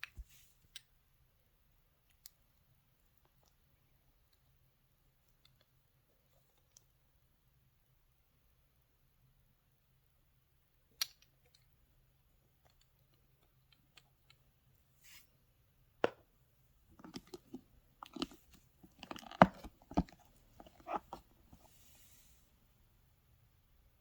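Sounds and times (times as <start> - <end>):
cosmetic case clicking: 17.0 - 21.2
packaging taps rustles and knocks: 17.0 - 21.3.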